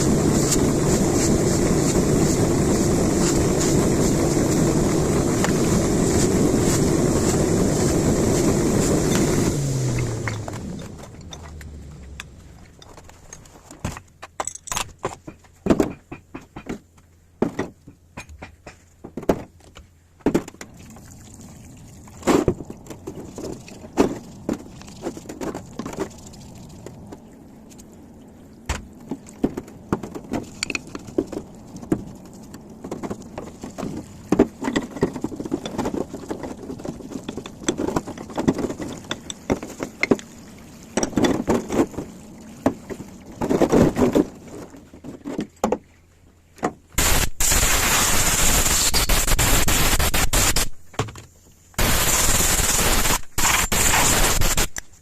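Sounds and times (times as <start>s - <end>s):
loud steady hissing: 0.0s - 10.5s, 47.0s - 50.8s, 51.8s - 54.8s
metal tools clinking and scraping: 12.2s - 15.0s.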